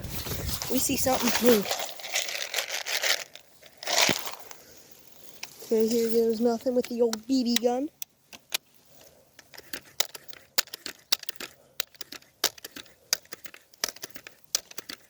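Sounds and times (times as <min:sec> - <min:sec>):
light crackling and clicking: 0:05.2 - 0:15.0.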